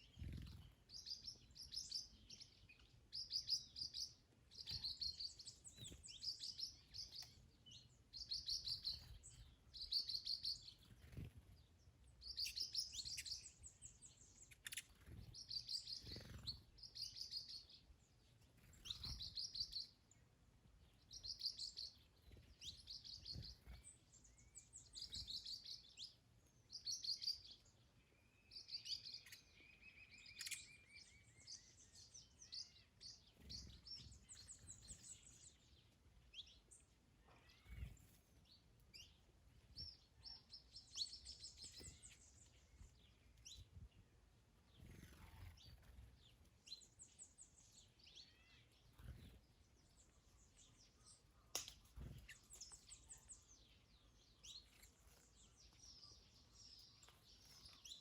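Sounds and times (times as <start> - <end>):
small bird buzzy trill: 0.0 - 11.4, 12.2 - 17.8, 18.6 - 20.0, 28.5 - 35.8, 37.2 - 39.2, 44.8 - 58.0
birds chirping: 0.0 - 58.0.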